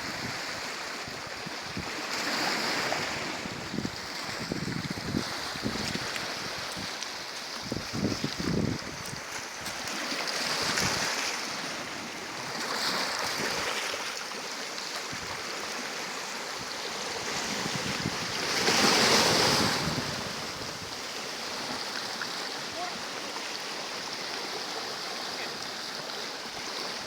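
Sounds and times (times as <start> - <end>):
sea waves washing in: 0.0 - 27.0
wind buffeting microphone: 2.9 - 7.0, 7.6 - 9.9, 16.6 - 21.0.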